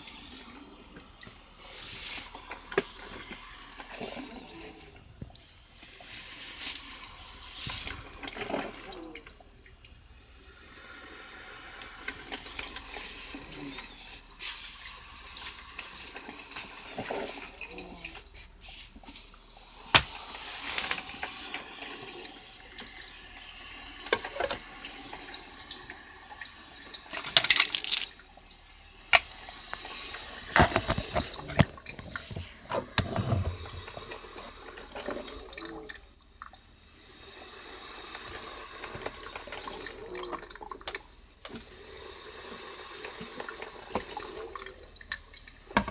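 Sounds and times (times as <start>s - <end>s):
coffee maker gurgling and hissing: 0.0s - 45.9s
sharp pops and spits: 29.2s - 33.0s.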